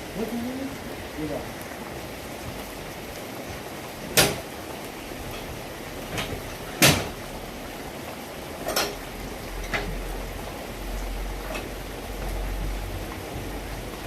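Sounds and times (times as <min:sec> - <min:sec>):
sharp knocks: 0:06.8 - 0:07.2.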